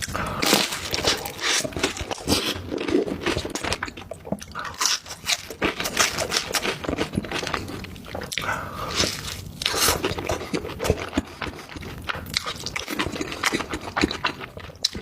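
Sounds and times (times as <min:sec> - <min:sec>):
crisp bites and crunches: 0:00.0 - 0:04.0
chewing: 0:00.0 - 0:15.0.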